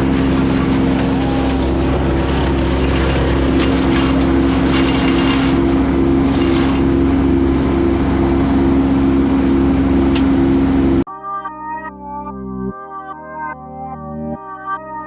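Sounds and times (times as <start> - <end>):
machine engine droning: 0.0 - 11.1.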